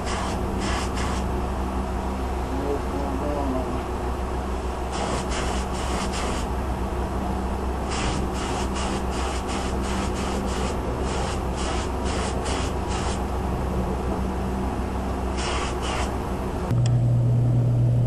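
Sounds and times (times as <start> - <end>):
spray gun hissing bursts: 0.0 - 1.3, 4.9 - 6.5, 7.9 - 13.2, 15.3 - 16.1
steady low hum: 0.0 - 18.0.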